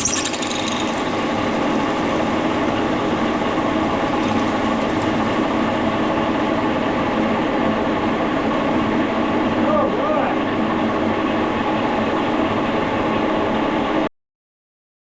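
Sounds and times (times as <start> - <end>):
milling machine drilling steel: 0.0 - 1.6.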